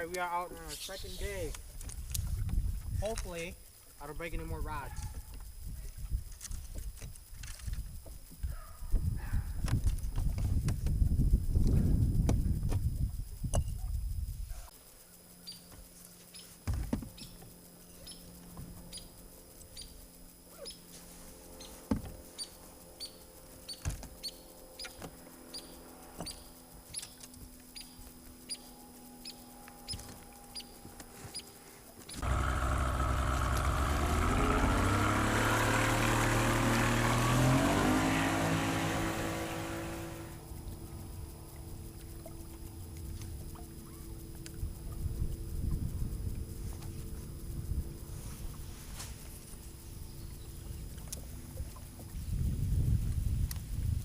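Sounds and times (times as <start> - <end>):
outboard motor accelerating: 32.1 - 53.2.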